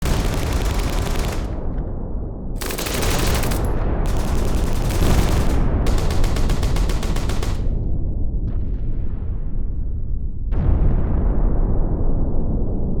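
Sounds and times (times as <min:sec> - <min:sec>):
machine-gun fire: 0:00.0 - 0:02.0, 0:02.6 - 0:08.0
low rumble of distant gunfire: 0:00.0 - 0:12.4.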